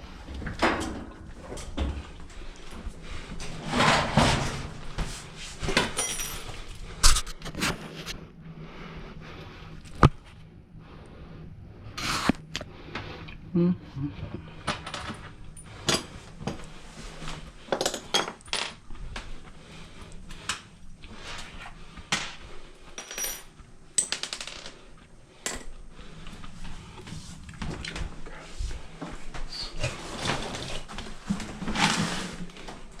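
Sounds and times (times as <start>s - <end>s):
metal parts and tools clinking: 5.8s - 6.6s, 23.0s - 24.7s.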